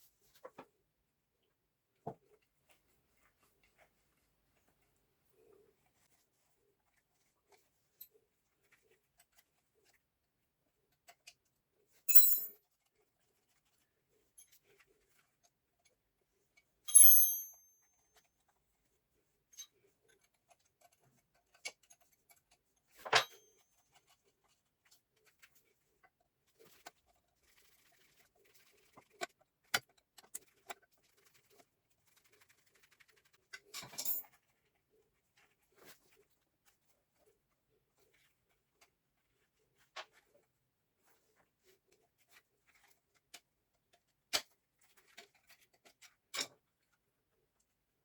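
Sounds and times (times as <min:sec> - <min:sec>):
metal tools clinking: 0:12.1 - 0:12.6, 0:16.9 - 0:17.6.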